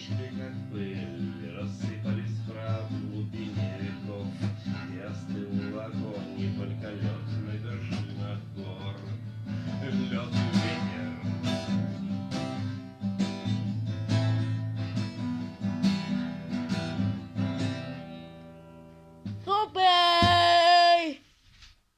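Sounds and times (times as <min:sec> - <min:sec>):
acoustic guitar strumming: 0:00.0 - 0:21.1
person calling out drawn-out note: 0:19.5 - 0:21.2.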